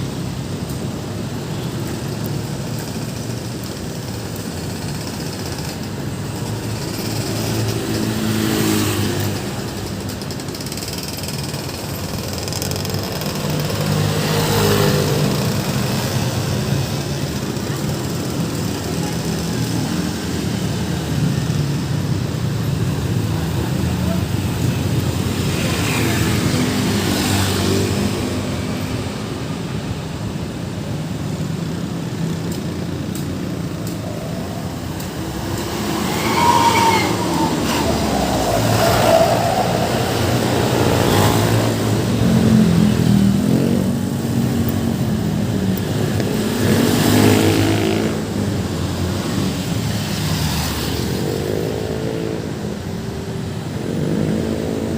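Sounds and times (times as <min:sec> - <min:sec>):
traffic rumble: 0:00.0 - 0:54.9
vehicles passing: 0:00.0 - 0:54.9
large vehicle engine passing: 0:34.2 - 0:44.2.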